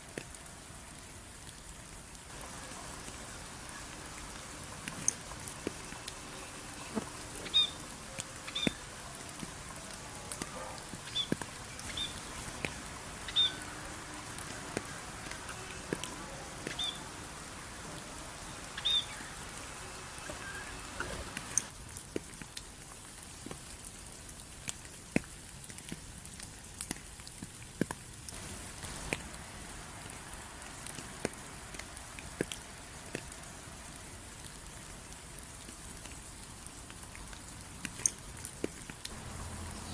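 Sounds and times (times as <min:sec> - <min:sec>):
background hiss: 0:00.0 - 0:24.7, 0:28.2 - 0:39.9
rain falling: 0:00.0 - 0:39.9
bird chirping: 0:06.8 - 0:07.8, 0:11.0 - 0:12.4, 0:13.2 - 0:13.7, 0:18.8 - 0:19.4, 0:39.2 - 0:39.9.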